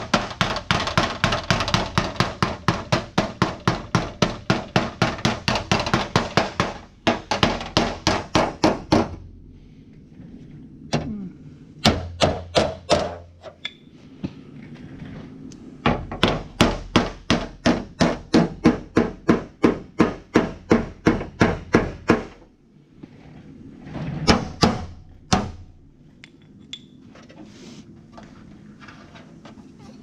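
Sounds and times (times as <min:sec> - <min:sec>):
hammer striking car fender: 0:00.0 - 0:09.2, 0:11.8 - 0:13.3, 0:15.9 - 0:22.4, 0:24.3 - 0:25.7.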